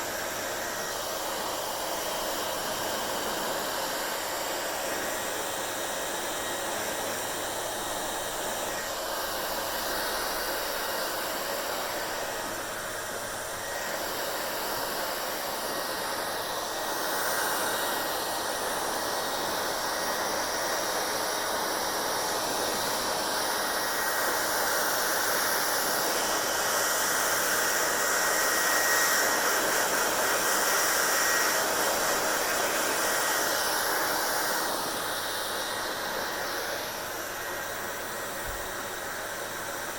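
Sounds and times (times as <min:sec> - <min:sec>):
hair dryer blowing: 0:00.0 - 0:39.9.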